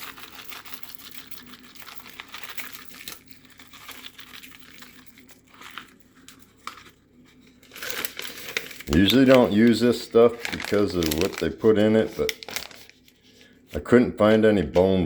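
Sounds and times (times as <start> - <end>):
packet crinkling and tearing: 0.0 - 6.0, 7.6 - 13.2.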